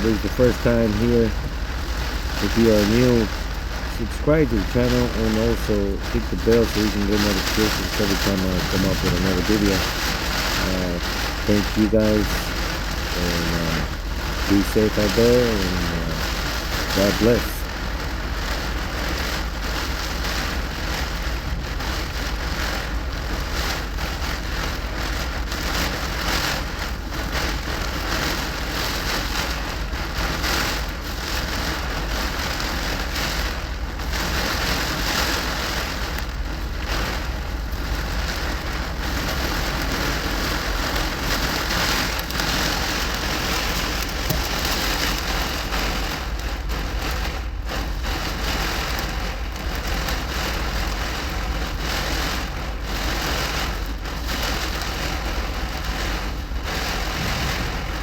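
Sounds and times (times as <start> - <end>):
low rumble: 0.0 - 18.6, 56.7 - 58.0
heavy rain on truck cab: 0.0 - 58.0.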